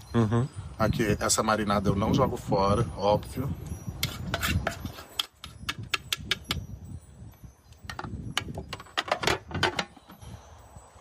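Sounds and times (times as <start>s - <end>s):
utensils and pot clinking: 3.9s - 6.6s, 7.8s - 10.3s.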